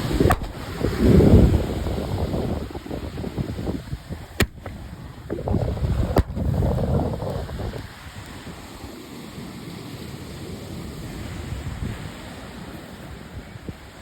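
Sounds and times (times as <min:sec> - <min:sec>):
surf: 0:00.0 - 0:14.0
wind buffeting microphone: 0:00.0 - 0:14.0
sharp cracks: 0:00.2 - 0:00.8, 0:04.4 - 0:04.9.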